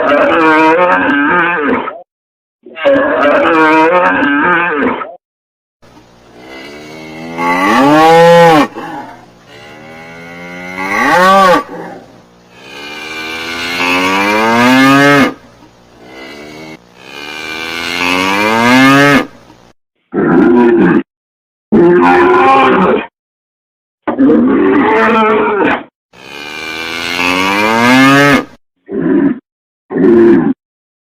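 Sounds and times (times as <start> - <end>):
cow mooing: 6.2 - 15.4, 16.0 - 19.3, 26.2 - 28.6.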